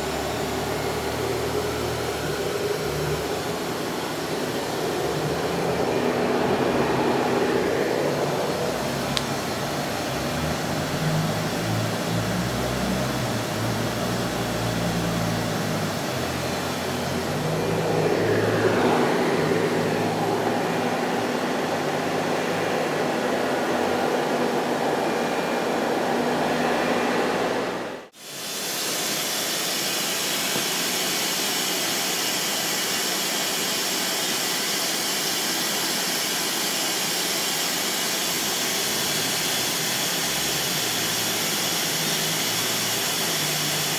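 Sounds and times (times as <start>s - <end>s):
steady machine hiss: 0.0s - 25.0s, 28.1s - 43.9s
machine motors humming: 0.0s - 28.1s
falling whine: 0.0s - 43.9s.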